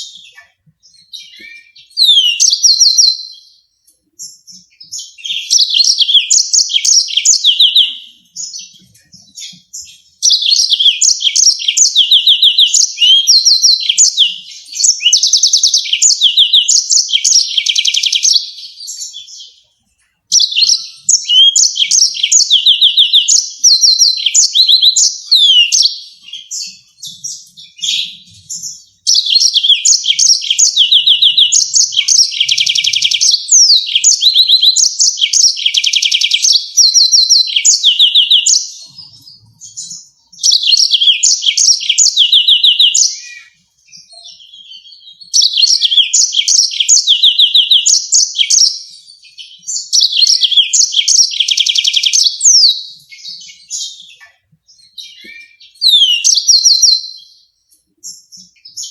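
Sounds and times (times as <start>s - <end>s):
canary singing trills: 0.0s - 58.9s.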